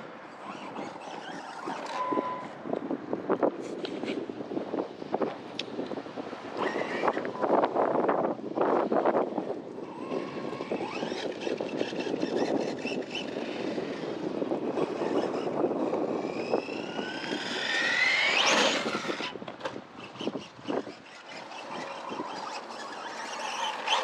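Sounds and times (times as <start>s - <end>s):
electric motor whining: 9.8s - 24.0s.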